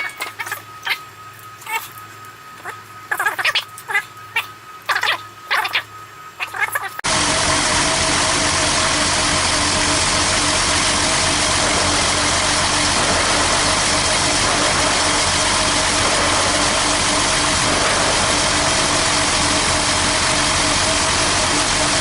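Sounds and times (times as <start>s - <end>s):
car engine idling: 7.0s - 22.0s.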